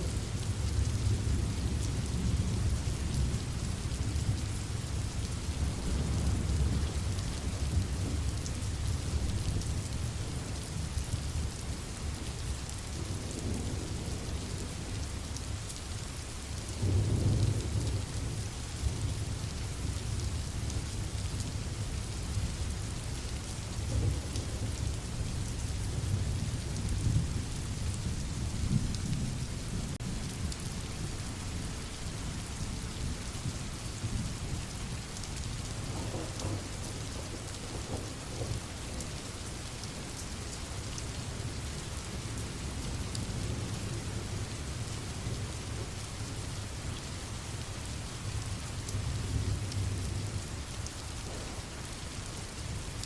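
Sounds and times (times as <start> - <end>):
steady rain falling: 0.0 - 53.0
low rolling thunder: 16.8 - 19.4, 35.8 - 39.2, 51.2 - 51.8.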